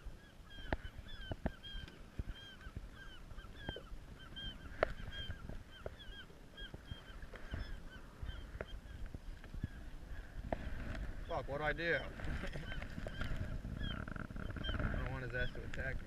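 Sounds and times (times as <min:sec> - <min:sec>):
seagull crying: 0:00.0 - 0:09.0.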